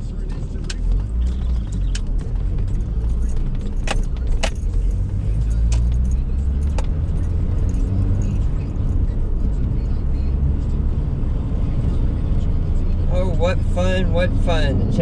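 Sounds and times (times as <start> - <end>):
truck rumbling on road: 0.0 - 15.0
sharp clicks and rattles: 0.3 - 9.1.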